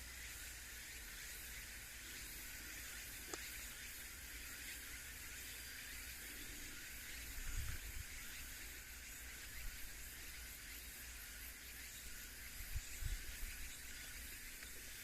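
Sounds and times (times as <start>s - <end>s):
steady high hiss: 0.0s - 15.0s
faint click: 3.2s - 3.6s, 14.5s - 14.8s.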